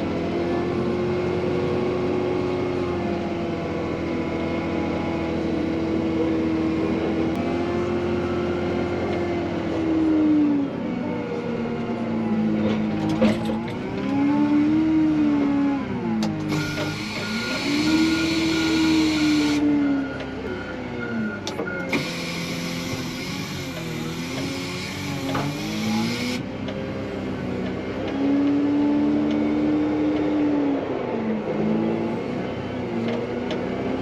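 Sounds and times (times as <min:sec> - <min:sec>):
wheel loader engine revving: 0:00.0 - 0:34.0
reversing alarm beeping: 0:16.5 - 0:23.1
hiss: 0:21.9 - 0:26.4.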